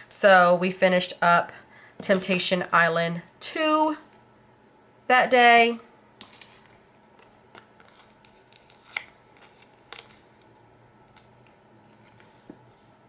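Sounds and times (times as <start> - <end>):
paper pages rustling: 6.2 - 10.4.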